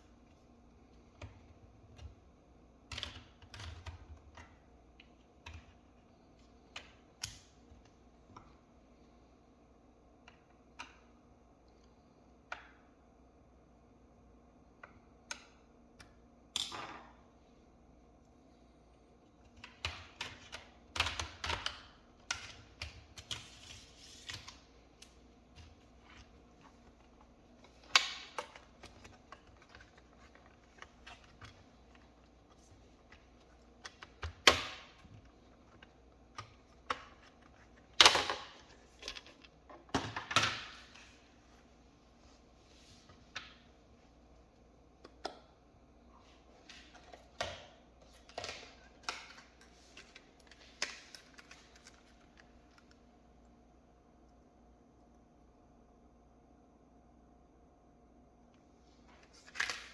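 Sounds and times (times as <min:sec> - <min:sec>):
plastic parts clicking and clattering: 0:19.4 - 0:41.1.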